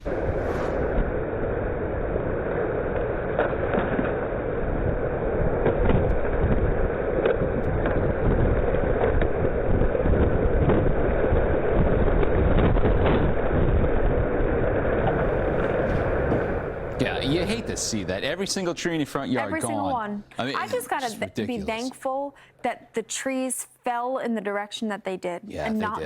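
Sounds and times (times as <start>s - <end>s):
wind blasting a microphone: 0.0s - 18.2s.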